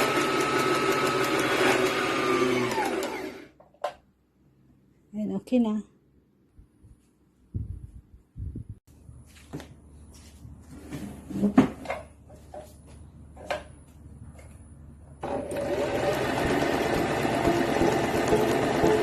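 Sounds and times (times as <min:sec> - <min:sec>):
sewing machine running: 0:00.0 - 0:03.5, 0:15.2 - 0:19.0.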